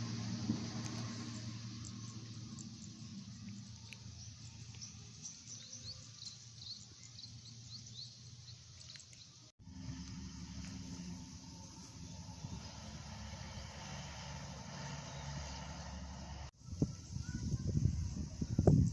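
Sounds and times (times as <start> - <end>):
bus engine driving off: 0.0 - 4.6, 9.6 - 16.6
birds chirping: 0.0 - 17.4
quiet outdoor background noise: 0.0 - 18.9.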